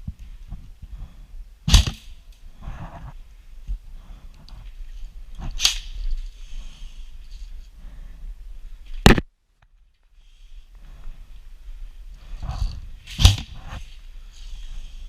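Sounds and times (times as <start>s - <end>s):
low rumble of movement: 10.6s - 15.0s.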